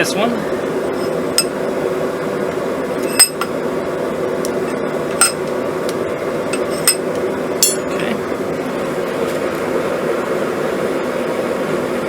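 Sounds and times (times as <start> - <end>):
metal tools clinking on steel: 7.6 - 8.0.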